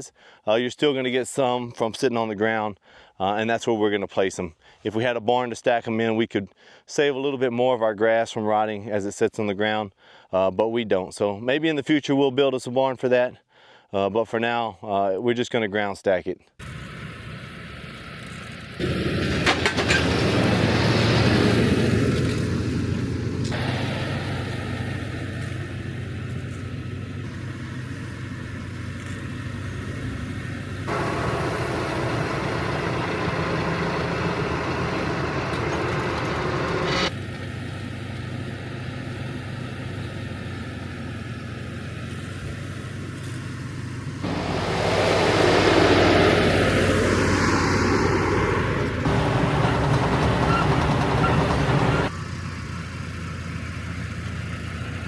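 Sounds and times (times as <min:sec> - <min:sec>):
tractor engine running: 0:16.6 - 0:55.0.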